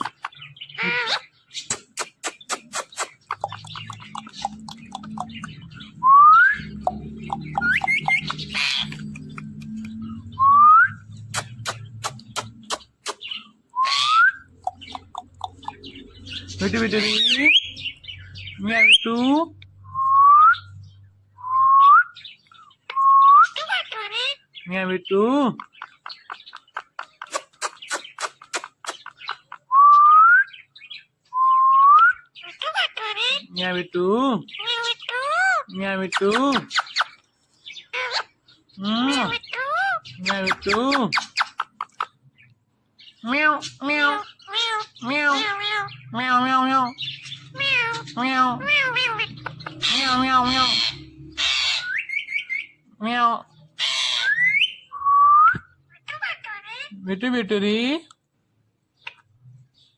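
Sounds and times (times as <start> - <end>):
parrot squawk: 0.0 - 5.5, 6.6 - 9.5, 11.3 - 17.8, 23.4 - 24.6, 32.4 - 33.5, 34.6 - 37.2, 37.8 - 42.2, 43.2 - 54.9, 55.9 - 57.0
parrot clicks and chirps: 1.6 - 5.8, 6.6 - 10.3, 11.0 - 16.2, 25.6 - 29.7, 36.1 - 37.3, 40.1 - 42.6, 48.8 - 50.6
sharp clicks: 11.3 - 13.3
parrot whistling: 13.8 - 15.8, 54.0 - 55.8.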